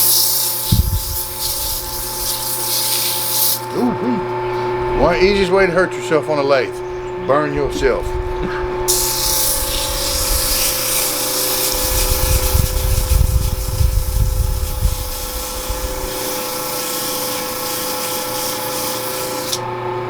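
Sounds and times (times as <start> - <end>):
tool scraping spinning wood: 0.0 - 6.9, 7.5 - 19.7
lathe motor hum: 0.6 - 20.0
heavy low rumble: 3.7 - 9.0.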